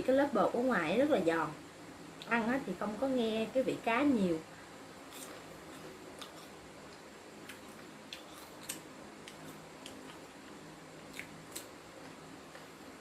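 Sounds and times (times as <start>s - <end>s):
person chewing crispy fried fish: 5.0s - 12.7s.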